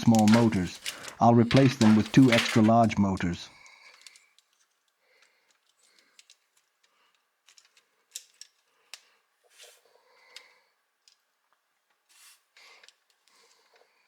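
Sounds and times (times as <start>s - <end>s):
plastic block parts clicking: 0.0s - 9.1s, 10.3s - 11.3s, 12.8s - 13.3s.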